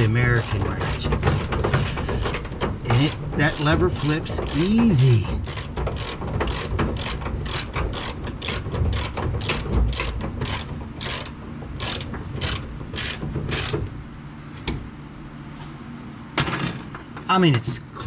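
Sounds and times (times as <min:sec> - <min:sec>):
ratchet wrench clicking: 0:00.0 - 0:04.8, 0:05.4 - 0:13.8.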